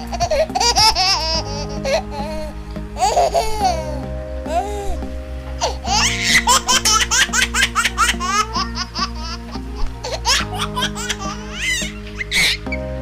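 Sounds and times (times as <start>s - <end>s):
baby laughing: 0.0s - 12.7s
background tune: 0.0s - 13.0s.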